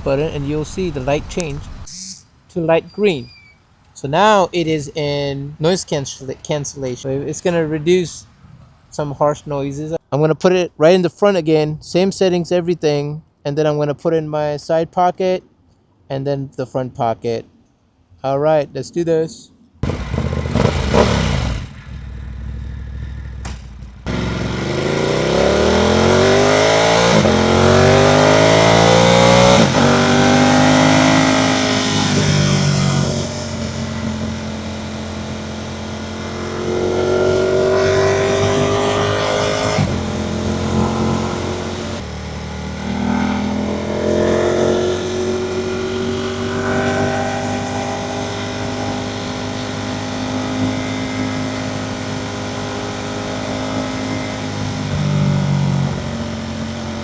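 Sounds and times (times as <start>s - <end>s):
motorcycle engine revving: 19.8s - 57.0s.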